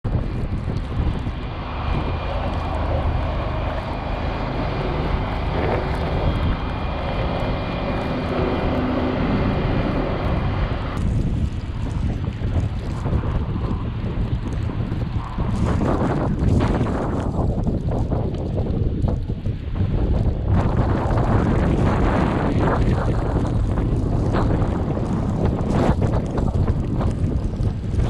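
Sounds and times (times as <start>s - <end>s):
dense rushing noise: 0.0s - 28.0s
heavy vehicle engine running: 0.1s - 18.0s.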